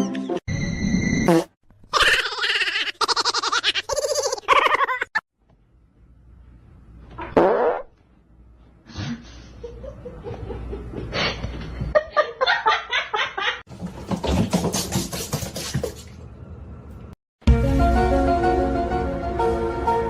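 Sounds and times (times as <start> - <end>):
people laughing: 9.6 - 13.6.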